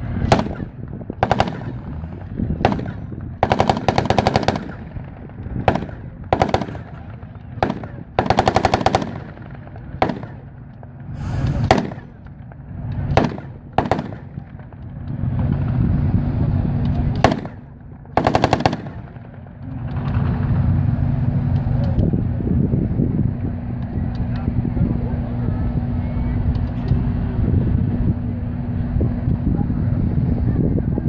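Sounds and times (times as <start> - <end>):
vehicle engine running: 0.0 - 31.0
machine gun fire: 0.2 - 14.8, 17.2 - 19.4.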